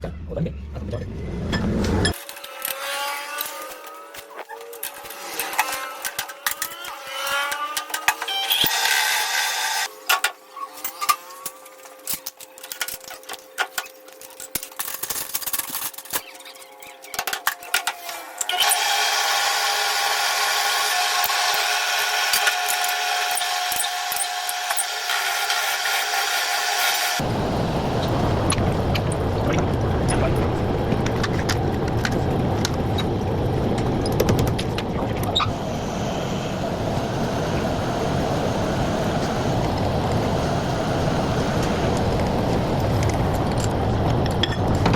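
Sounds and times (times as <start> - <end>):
motor vehicle rumble: 0.0 - 2.2, 27.2 - 44.9
machine hum: 0.0 - 44.9.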